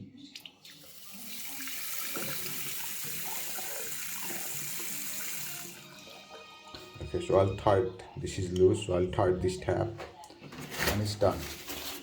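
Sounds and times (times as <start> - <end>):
water running into sink: 0.6 - 6.1.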